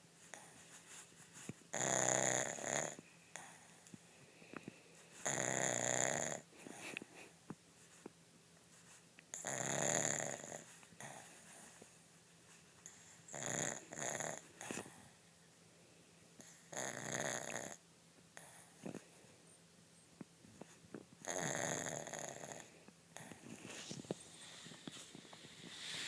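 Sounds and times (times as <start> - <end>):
dog snoring: 1.7 - 3.8, 5.2 - 6.9, 9.3 - 11.8, 12.8 - 15.2, 16.4 - 17.8, 18.4 - 19.1, 21.2 - 24.1.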